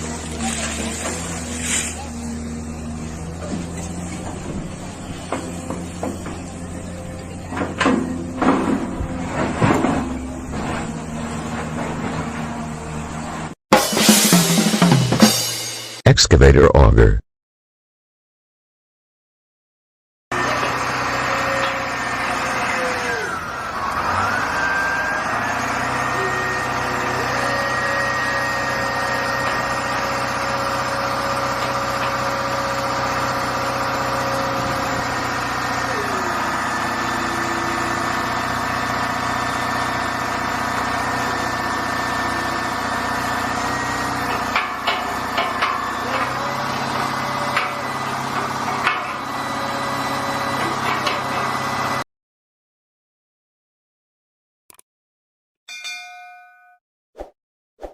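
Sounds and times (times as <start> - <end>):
excavator diesel engine running: 0.0 - 13.5, 20.4 - 52.0.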